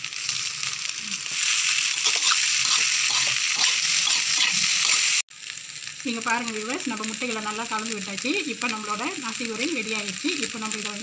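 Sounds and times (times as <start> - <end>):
fried rice sizzling in a pan: 0.0 - 11.0
spatula scraping a pan: 1.3 - 5.2.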